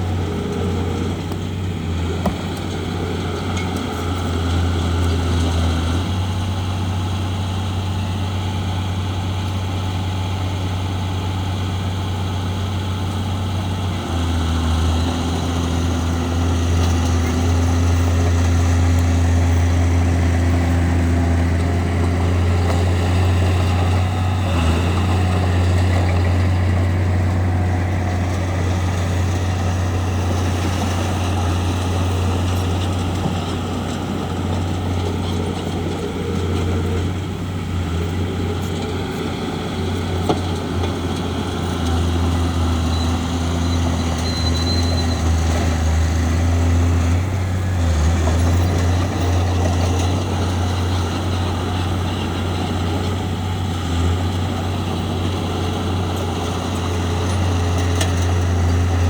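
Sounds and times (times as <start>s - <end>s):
bulldozer diesel engine: 0.0s - 59.0s.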